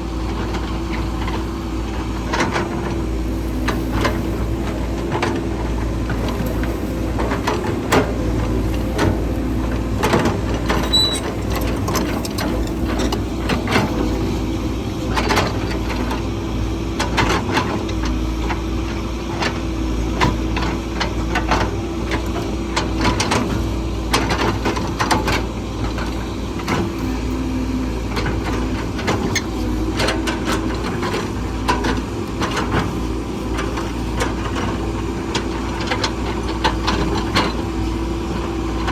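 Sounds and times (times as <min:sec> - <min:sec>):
diesel machine engine drone: 0:00.0 - 0:38.9
metallic clanks and knocks: 0:06.1 - 0:14.5.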